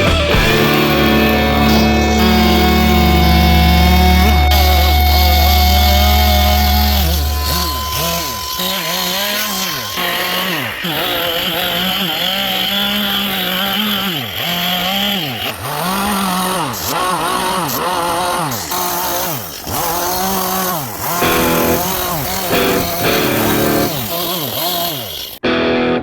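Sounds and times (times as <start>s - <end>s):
chainsaw cutting wood: 0.0s - 25.4s.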